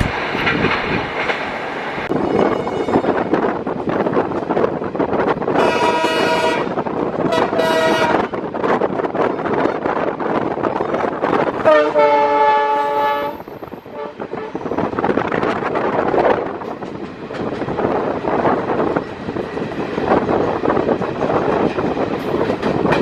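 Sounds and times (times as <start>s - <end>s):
train rumble and wheel clatter: 0.0s - 23.0s
locomotive horn: 2.2s - 3.2s, 5.6s - 8.4s, 11.6s - 14.8s.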